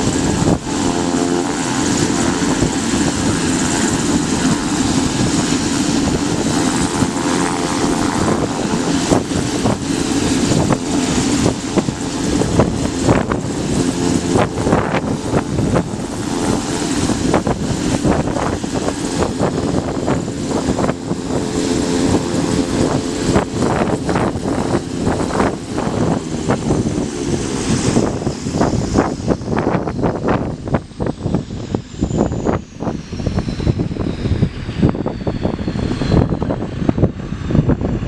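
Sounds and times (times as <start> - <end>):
turboprop propeller drone: 0.0 - 38.0.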